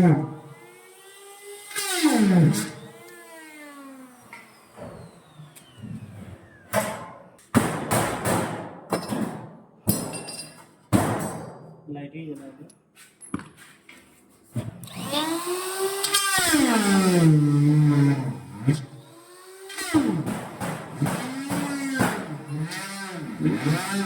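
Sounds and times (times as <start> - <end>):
harsh bursts of drilling: 0.0 - 6.7, 14.8 - 24.0
drill motor whine spinning down: 0.5 - 6.7, 14.9 - 18.3.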